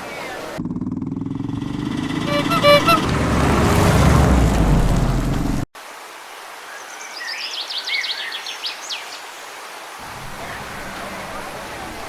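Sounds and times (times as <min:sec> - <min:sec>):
rumbling traffic noise: 0:00.6 - 0:05.7.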